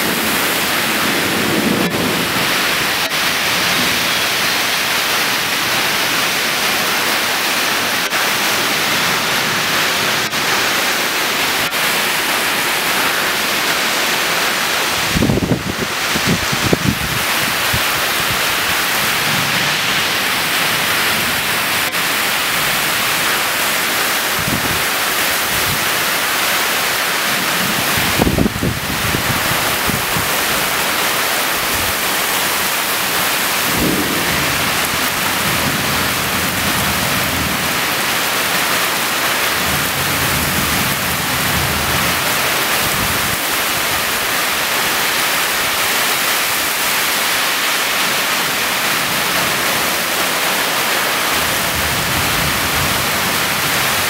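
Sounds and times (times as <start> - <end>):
low thunder rumble: 0.0 - 4.7, 33.5 - 38.0
heavy rain pouring: 0.0 - 54.0.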